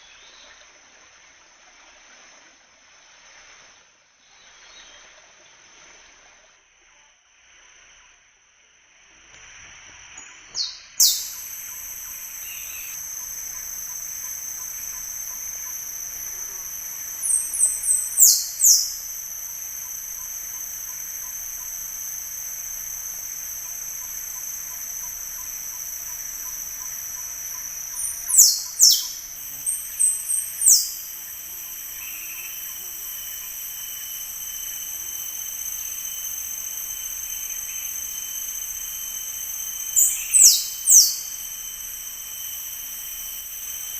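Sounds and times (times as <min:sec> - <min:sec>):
insects droning: 0:00.0 - 0:43.9
quick notes with falling whistles: 0:10.6 - 0:43.9.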